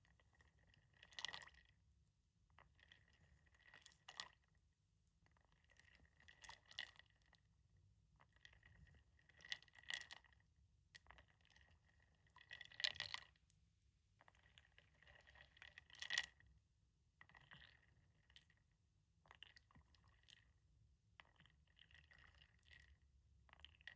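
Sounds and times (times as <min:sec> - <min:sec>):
wooden beads clicking in water: 0:12.2 - 0:13.3, 0:14.2 - 0:16.4.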